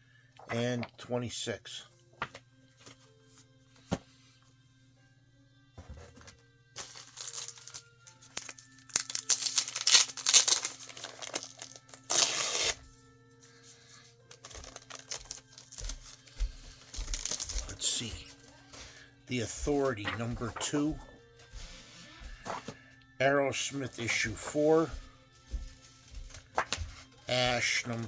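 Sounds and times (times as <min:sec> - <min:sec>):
comic books rustling and crinkling: 0:02.2 - 0:04.2, 0:05.8 - 0:12.8, 0:13.5 - 0:22.8, 0:23.5 - 0:28.0.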